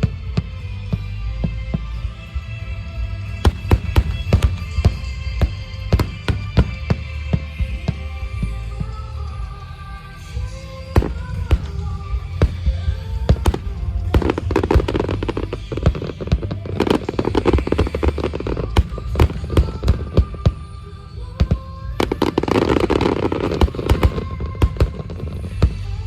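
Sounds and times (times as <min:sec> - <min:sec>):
fireworks bursting with crackle: 0:00.0 - 0:26.0
music: 0:00.0 - 0:26.0.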